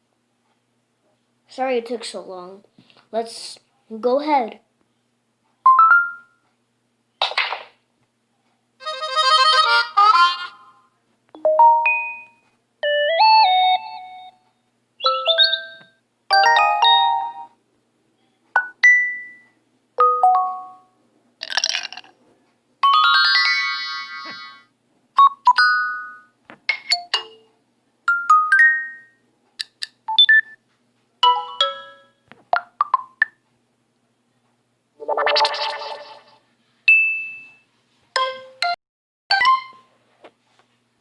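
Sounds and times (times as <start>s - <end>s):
phone notification chimes: 11.4s - 14.3s, 20.0s - 20.9s.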